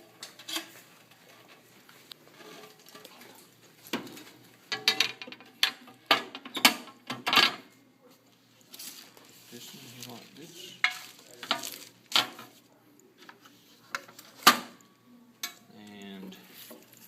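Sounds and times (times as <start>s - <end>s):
scratchy rustles: 8.7s - 11.9s.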